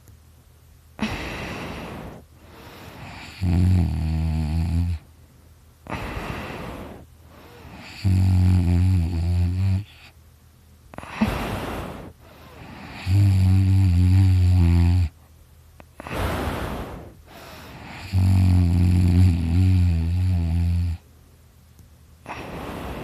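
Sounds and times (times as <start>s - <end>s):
man snoring: 3.0s - 5.0s, 7.6s - 10.1s, 11.0s - 15.2s, 16.0s - 21.0s
rushing breaths: 16.0s - 18.0s, 22.3s - 23.0s.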